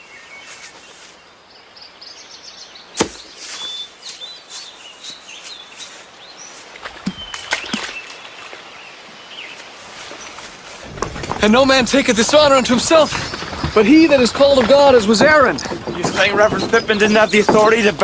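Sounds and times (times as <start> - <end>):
small birds chirping: 0.0 - 18.0
sharp knock: 3.0 - 3.3.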